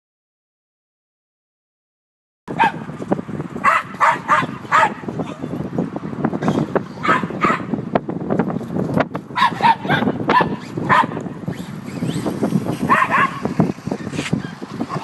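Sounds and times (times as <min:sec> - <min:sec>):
dogs barking: 0:02.5 - 0:02.9, 0:03.6 - 0:05.4, 0:07.0 - 0:07.8, 0:09.3 - 0:11.2, 0:12.8 - 0:13.5
continuous rough noise: 0:02.5 - 0:15.0.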